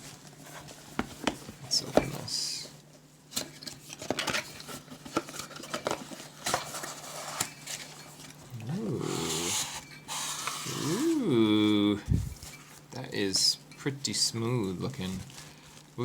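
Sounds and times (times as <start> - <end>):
cardboard box packaging rustling: 3.3 - 12.9
person saying ooh: 8.5 - 9.6, 10.8 - 12.0.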